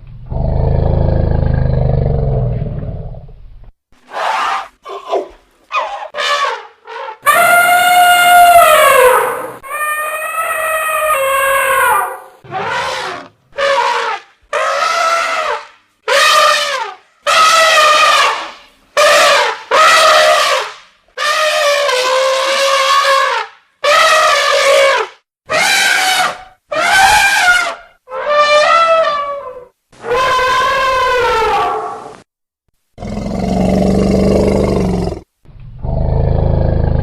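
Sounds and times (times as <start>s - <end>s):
elephant trumpeting: 4.0s - 32.1s.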